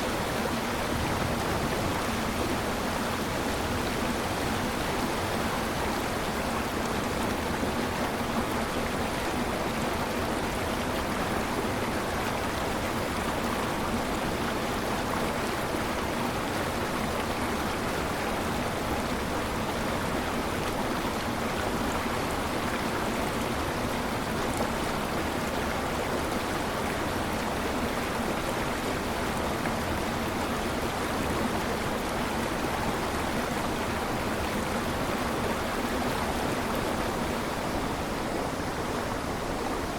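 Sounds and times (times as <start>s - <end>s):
waterfall roaring: 27.0s - 39.9s.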